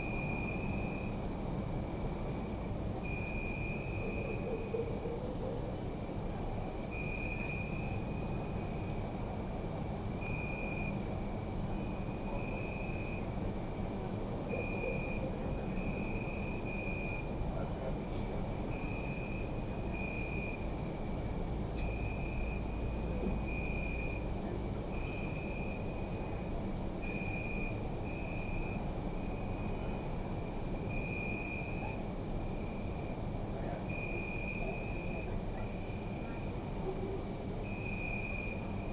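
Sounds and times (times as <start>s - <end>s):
high-pitched cricket trill: 0.0s - 5.0s, 5.7s - 38.9s
lower cricket chirping: 0.0s - 38.9s.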